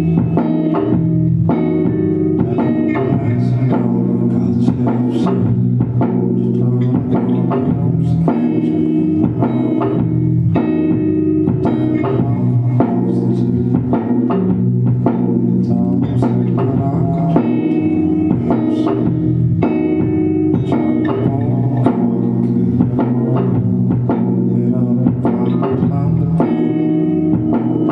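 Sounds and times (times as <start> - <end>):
live band playing: 0.0 - 27.9.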